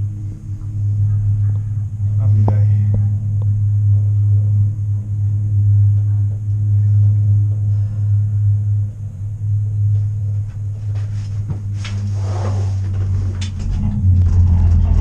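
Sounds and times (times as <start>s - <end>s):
vehicle cabin rumble and hum: 0.0s - 15.0s.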